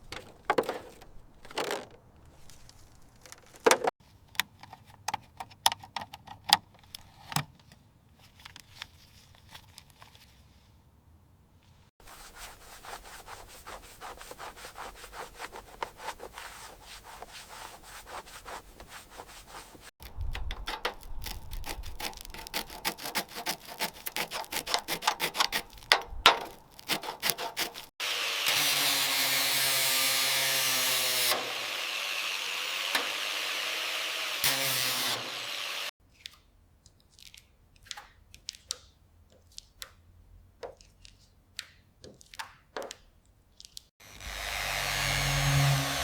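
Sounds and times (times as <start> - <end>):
sanding strokes on car bodywork: 12.0 - 19.9
power tool humming: 28.0 - 35.9, 44.0 - 46.0.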